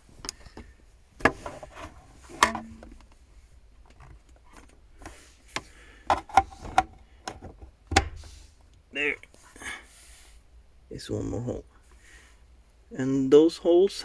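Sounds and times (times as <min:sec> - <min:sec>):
handling clicks and knocks: 0:02.3 - 0:03.2, 0:03.8 - 0:08.3.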